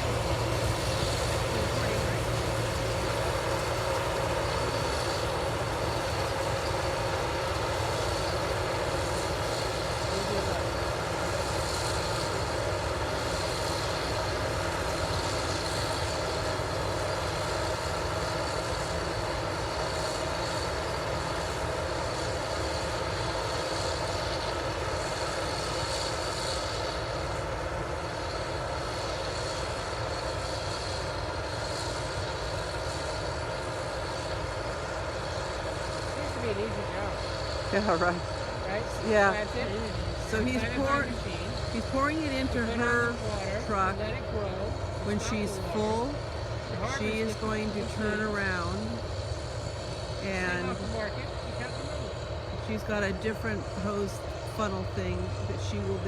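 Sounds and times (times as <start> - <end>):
heavy machinery engine drone: 0.0 - 56.0.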